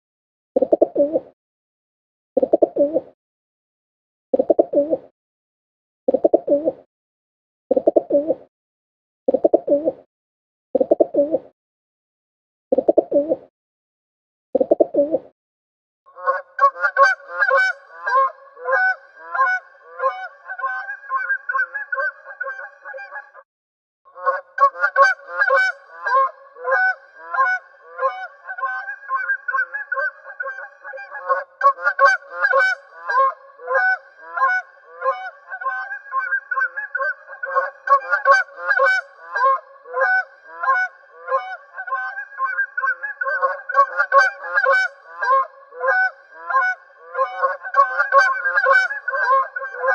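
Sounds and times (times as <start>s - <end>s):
geese honking: 16.2s - 23.4s, 24.2s - 49.9s.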